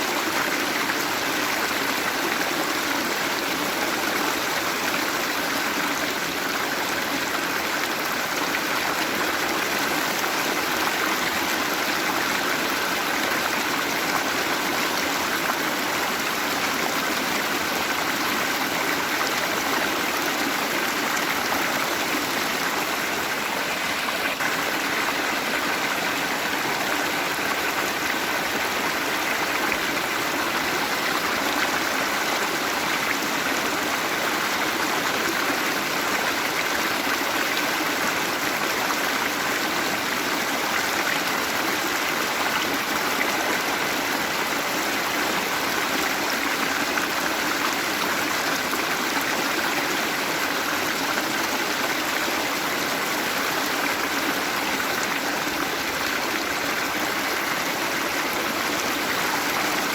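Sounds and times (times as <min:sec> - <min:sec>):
waterfall rushing: 0:00.0 - 0:37.8.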